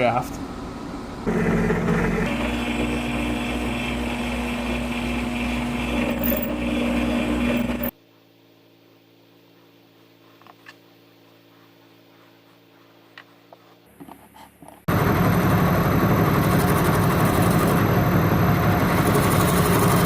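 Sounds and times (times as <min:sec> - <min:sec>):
power tool motor running: 0:01.3 - 0:07.9.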